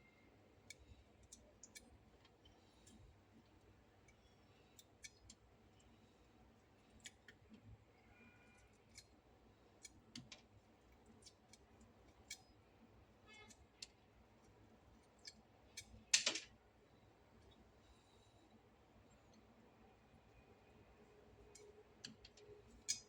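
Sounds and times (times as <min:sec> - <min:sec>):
clicks and taps of small objects: 0:09.8 - 0:10.5, 0:15.2 - 0:16.5.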